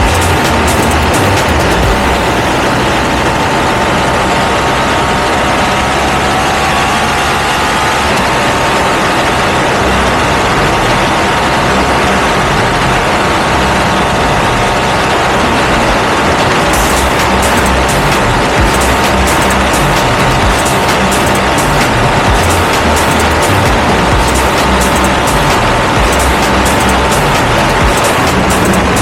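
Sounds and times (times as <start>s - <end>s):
twin-cylinder motorcycle engine running: 0.0s - 29.0s.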